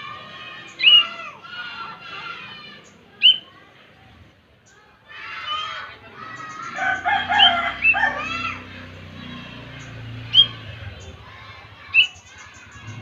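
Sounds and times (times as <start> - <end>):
sharp upward bird notes: 0.7 - 1.2, 3.2 - 3.5, 6.3 - 13.0
bird singing whistled phrases: 0.8 - 1.1, 3.2 - 3.5, 10.3 - 10.6, 11.9 - 12.3.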